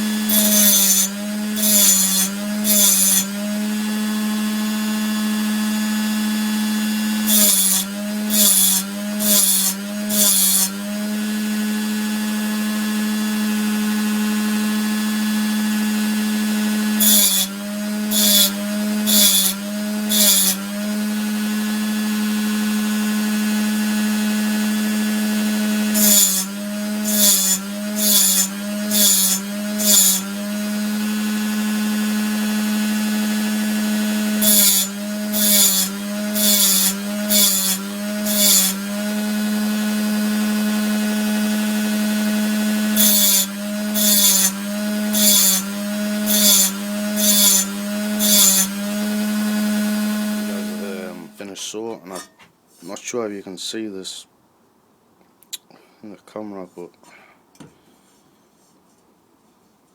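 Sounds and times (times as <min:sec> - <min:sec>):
rotary tool grinding saw teeth: 0:00.0 - 0:03.4, 0:07.2 - 0:10.7, 0:16.9 - 0:20.8, 0:25.9 - 0:30.3, 0:34.4 - 0:39.1, 0:42.9 - 0:49.3.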